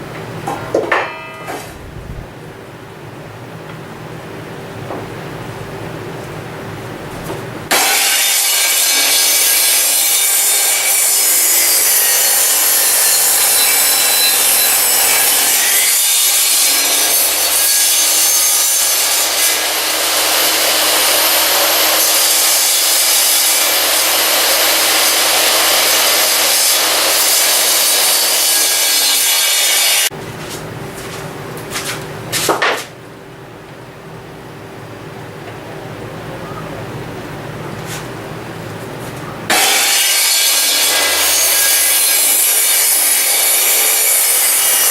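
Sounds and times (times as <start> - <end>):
power tool cutting wood: 7.7 - 30.1, 39.5 - 44.9.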